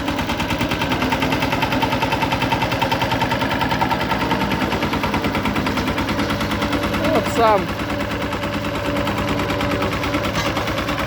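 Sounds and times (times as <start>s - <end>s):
road roller engine pulsing: 0.0s - 11.0s.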